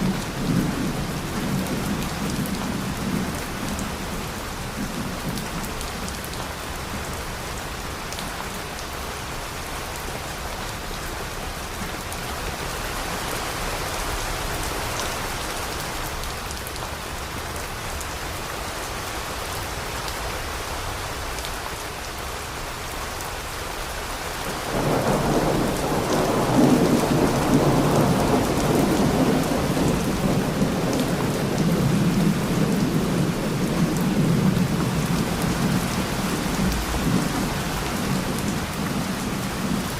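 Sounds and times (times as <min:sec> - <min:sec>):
steady rain falling: 0:00.0 - 0:39.9
loud roll of thunder: 0:24.7 - 0:39.8.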